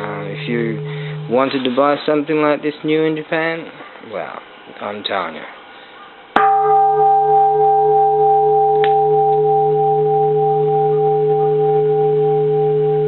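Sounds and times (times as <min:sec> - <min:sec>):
large temple bell ringing: 0:00.0 - 0:01.4, 0:06.4 - 0:13.0.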